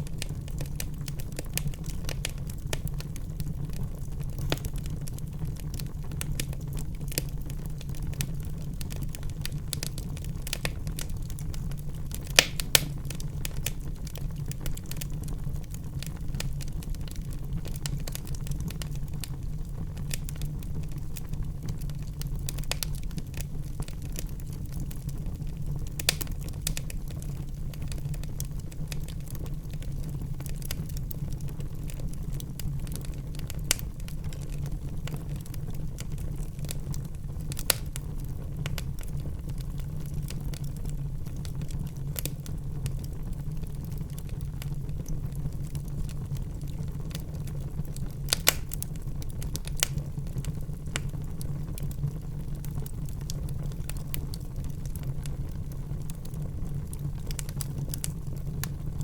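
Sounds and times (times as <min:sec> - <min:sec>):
wood fire crackling: 0:00.0 - 0:59.0
sharp fire pops: 0:12.1 - 0:15.2, 0:22.5 - 0:23.5, 0:26.0 - 0:27.0, 0:37.5 - 0:38.0, 0:48.2 - 0:51.3.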